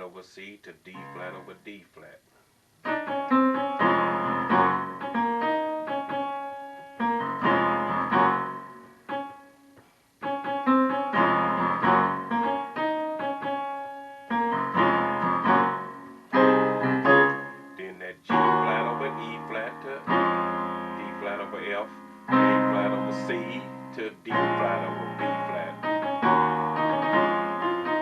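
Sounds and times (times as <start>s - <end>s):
piano playing gospel chords: 1.0s - 1.7s, 2.8s - 28.0s.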